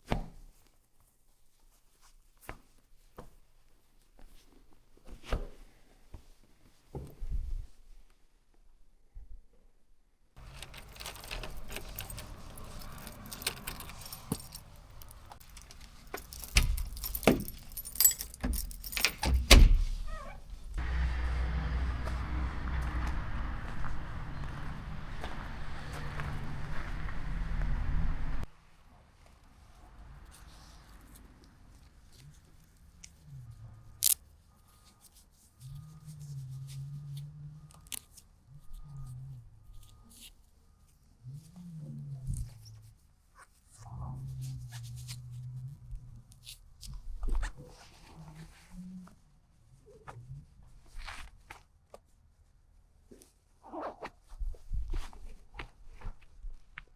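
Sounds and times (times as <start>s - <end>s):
handling knocks: 10.4s - 20.0s
keys jangling: 10.4s - 20.2s
muffled motorcycle engine hum: 20.8s - 28.5s.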